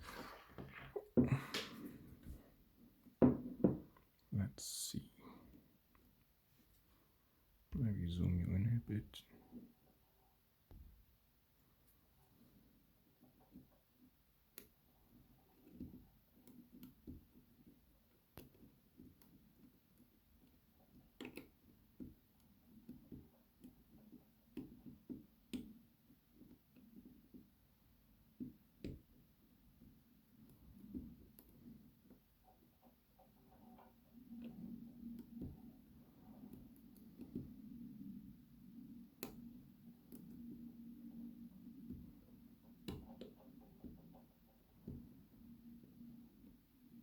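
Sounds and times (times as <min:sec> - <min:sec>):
low steady hum: 0:33.5 - 0:47.0.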